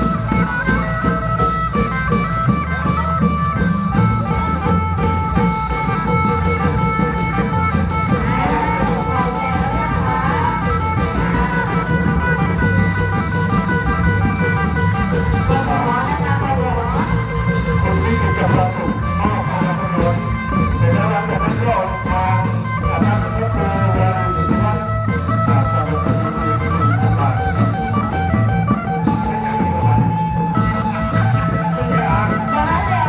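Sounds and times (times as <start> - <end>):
long drum beat: 0.0 - 33.0
plucked melody: 0.0 - 33.0
wavering melody line: 0.0 - 33.0.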